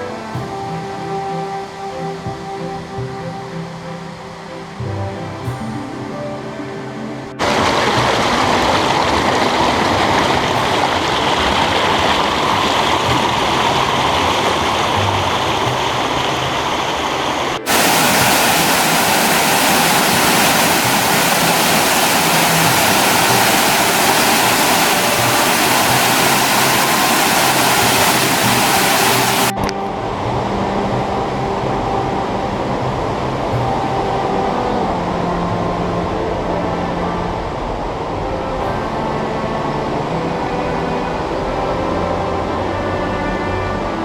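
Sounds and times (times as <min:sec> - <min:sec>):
waterfall rushing: 0:06.3 - 0:33.5.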